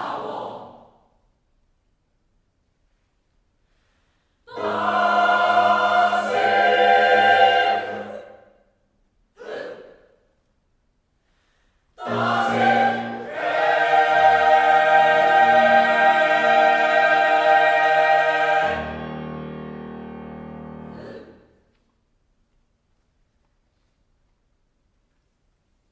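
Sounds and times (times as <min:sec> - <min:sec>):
choir singing sustained chords: 0:04.5 - 0:08.6, 0:12.0 - 0:21.5.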